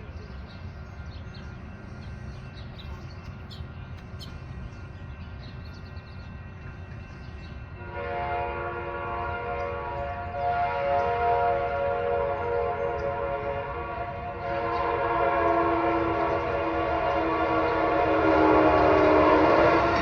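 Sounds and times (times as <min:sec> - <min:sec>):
locomotive horn chord: 0:07.8 - 0:20.0.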